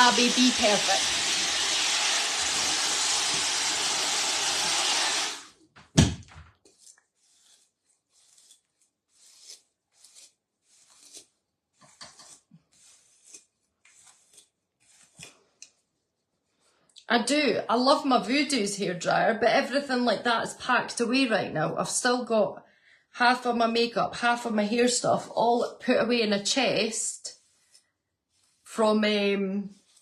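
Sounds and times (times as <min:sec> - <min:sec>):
hair dryer blowing: 0:00.0 - 0:05.6.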